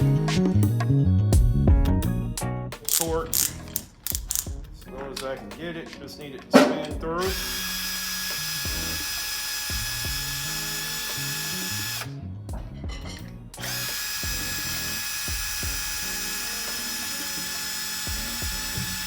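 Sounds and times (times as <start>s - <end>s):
cordless drill driving screw: 2.9s - 4.5s, 7.2s - 12.1s, 13.6s - 19.0s.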